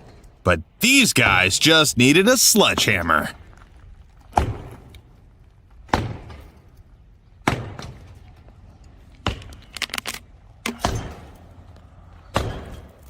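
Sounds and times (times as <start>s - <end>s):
patter of small cracks: 7.9s - 10.4s.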